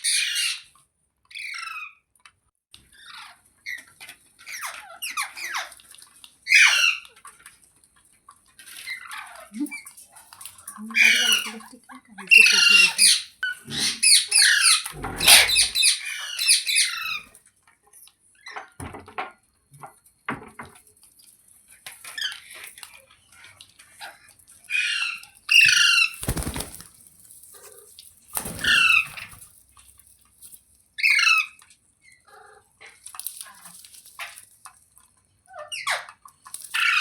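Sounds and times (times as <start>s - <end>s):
parrot screeching: 0.0s - 0.7s, 6.5s - 7.0s, 12.4s - 17.2s, 24.7s - 26.8s, 28.4s - 29.3s.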